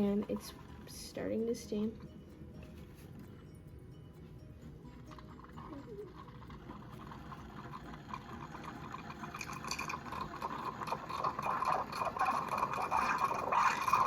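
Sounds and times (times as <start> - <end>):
steam wand hissing in milk: 7.0 - 14.0.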